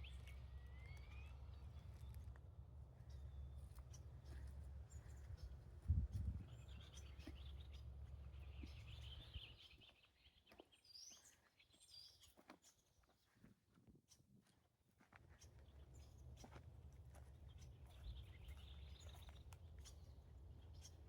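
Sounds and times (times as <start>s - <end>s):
small birds singing: 3.0s - 12.9s, 17.2s - 21.0s
wind rumbling on microphone: 5.4s - 6.8s.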